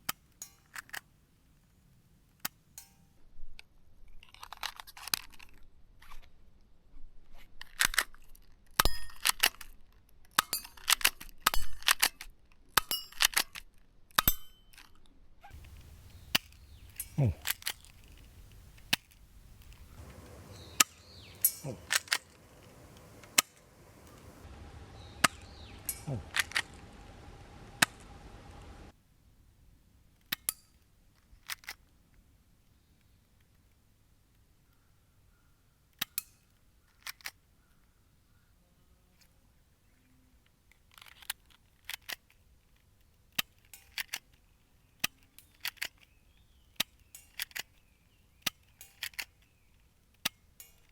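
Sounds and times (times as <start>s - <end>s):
background hiss: 15.5s - 28.9s.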